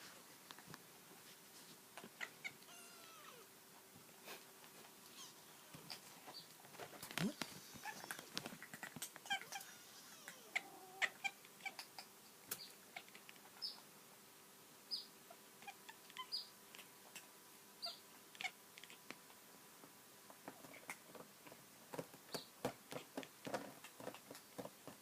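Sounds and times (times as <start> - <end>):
cat chirping meows: 2.4 - 3.5, 5.1 - 5.4, 9.2 - 11.8.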